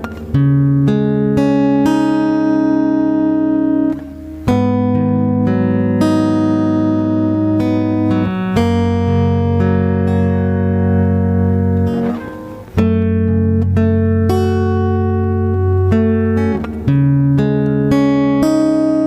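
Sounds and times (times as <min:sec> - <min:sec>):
instrumental backing track chords: 0:00.0 - 0:19.0.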